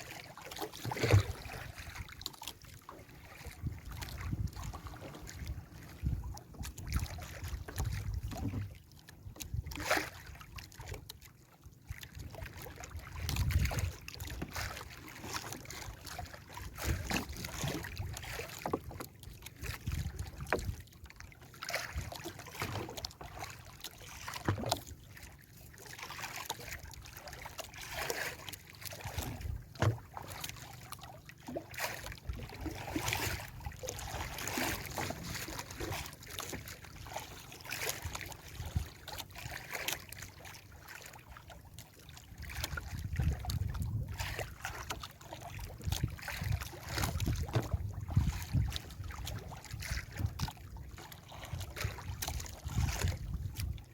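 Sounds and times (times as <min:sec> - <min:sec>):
water lapping against boat: 0:00.0 - 0:53.9
wind rumbling on microphone: 0:03.5 - 0:08.7, 0:13.2 - 0:14.0, 0:42.4 - 0:44.3, 0:45.7 - 0:50.9, 0:51.5 - 0:53.9.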